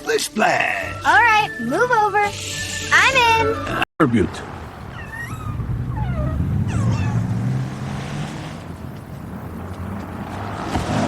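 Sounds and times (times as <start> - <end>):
low steady rumble: 4.0 - 10.7
kittens meowing: 4.6 - 8.0.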